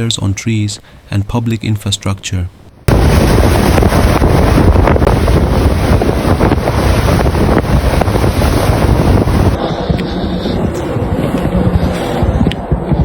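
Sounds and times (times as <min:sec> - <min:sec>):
wind blowing over microphone: 0:02.8 - 0:13.0.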